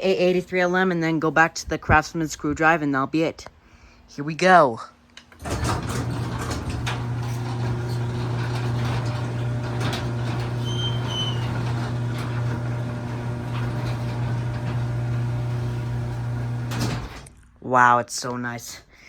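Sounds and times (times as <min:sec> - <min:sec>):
garage door opener motor hum: 0:05.3 - 0:17.4
garage door rattling: 0:05.3 - 0:17.4.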